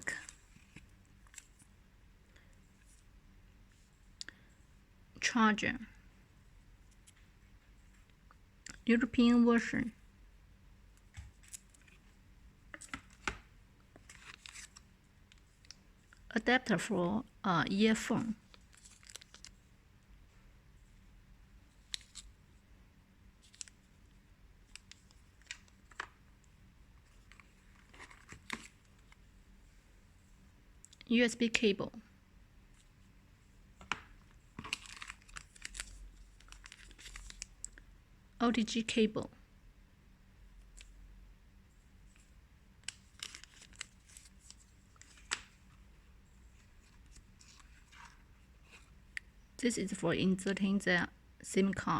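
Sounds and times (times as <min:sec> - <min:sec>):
packaging rustling: 0:14.0 - 0:14.9, 0:18.5 - 0:19.6, 0:27.1 - 0:29.2, 0:33.8 - 0:37.5, 0:42.8 - 0:45.8.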